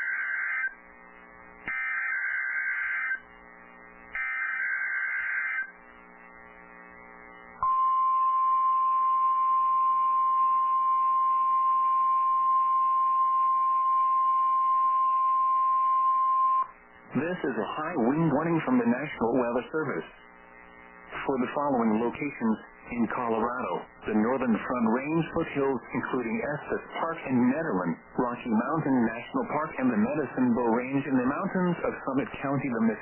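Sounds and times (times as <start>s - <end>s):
steady warning alarm tone: 0.0s - 0.8s, 1.7s - 3.2s, 4.2s - 5.7s.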